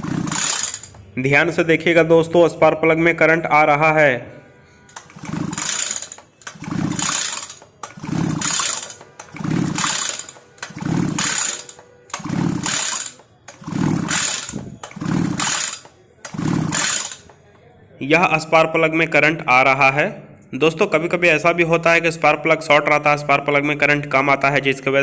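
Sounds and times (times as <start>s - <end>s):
recoil starter cord whirring: 0.0s - 1.2s, 4.8s - 17.5s.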